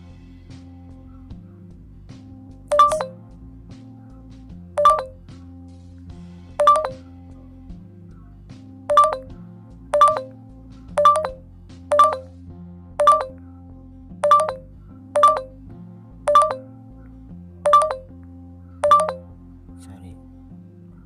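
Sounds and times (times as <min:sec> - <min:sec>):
soft background music: 0:00.0 - 0:21.0
short electronic beep: 0:02.7 - 0:03.2, 0:04.8 - 0:05.2, 0:06.6 - 0:07.0, 0:08.9 - 0:09.3, 0:10.0 - 0:10.3, 0:11.0 - 0:12.3, 0:13.0 - 0:13.4, 0:14.2 - 0:14.6, 0:15.2 - 0:15.5, 0:16.3 - 0:16.6, 0:17.7 - 0:18.1, 0:18.8 - 0:19.2.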